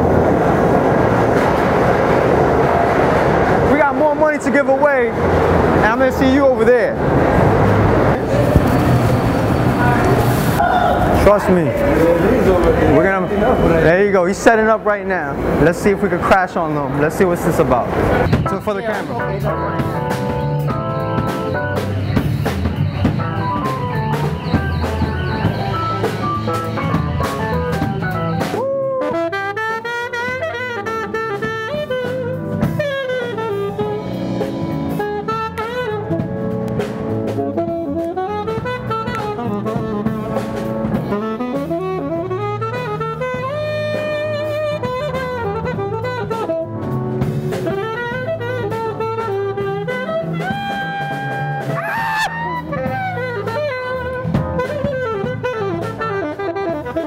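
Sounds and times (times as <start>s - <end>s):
sliding jazz melody: 0.0s - 57.0s
drum beat: 18.2s - 29.4s, 30.1s - 57.0s.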